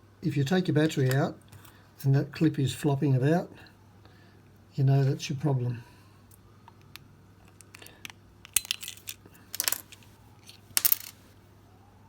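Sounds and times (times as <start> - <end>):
small plastic and metal parts clicking: 6.8 - 11.2.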